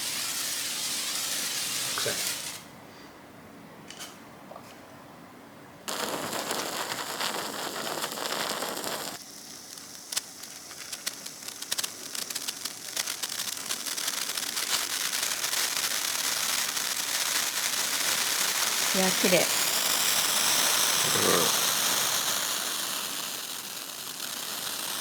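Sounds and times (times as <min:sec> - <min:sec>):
fire crackling: 0:00.0 - 0:02.7, 0:05.9 - 0:25.0
fire hissing: 0:00.0 - 0:02.7, 0:05.9 - 0:25.0.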